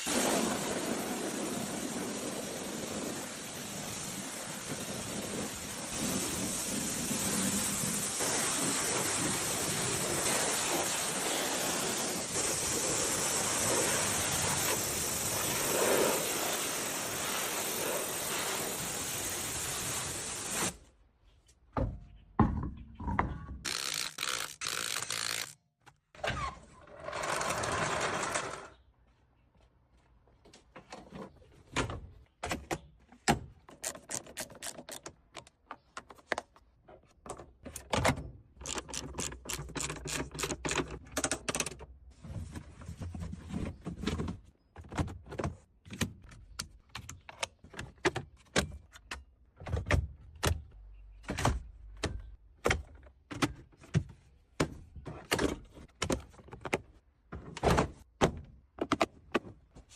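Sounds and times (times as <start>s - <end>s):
tools clicking and knocking: 32.4s - 41.9s.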